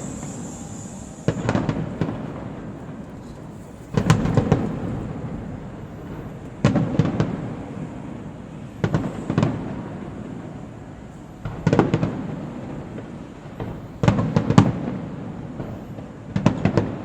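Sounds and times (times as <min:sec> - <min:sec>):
low echoing rumble: 0:00.0 - 0:10.5
fireworks bangs: 0:00.0 - 0:17.0.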